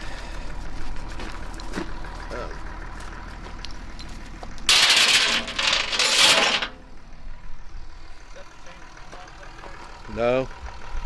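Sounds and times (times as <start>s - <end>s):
heavy chain clattering: 0.0s - 6.9s.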